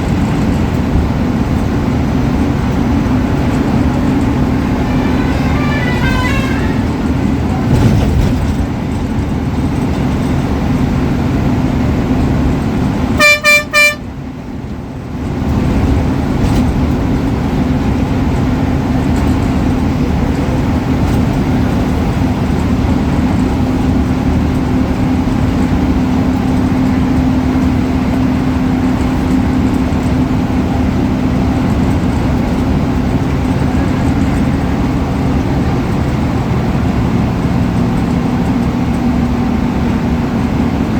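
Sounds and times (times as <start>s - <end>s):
bus diesel engine running: 0.0s - 40.9s
bus horn blasts: 3.4s - 8.1s, 13.1s - 14.3s.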